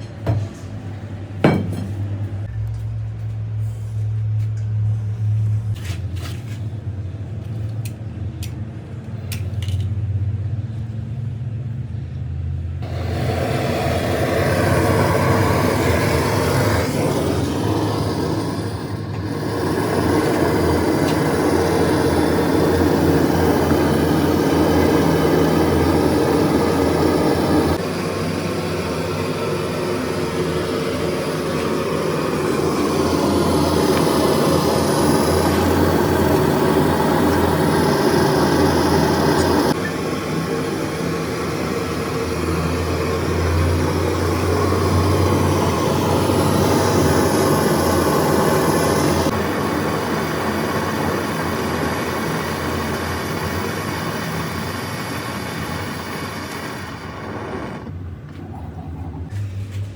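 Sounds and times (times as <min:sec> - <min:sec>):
large engine humming: 0:06.9 - 0:59.9
loud rushing mechanical noise: 0:12.7 - 0:58.3.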